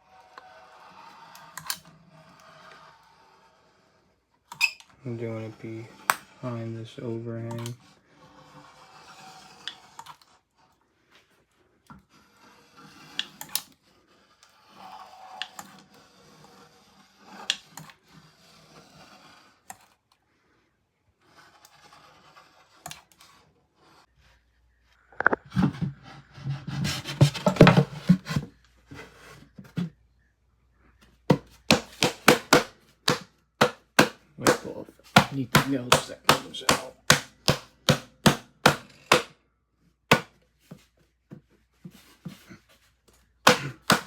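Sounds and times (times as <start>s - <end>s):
knocking and rubbing: 25.1s - 30.0s, 31.2s - 39.3s, 43.4s - 44.0s.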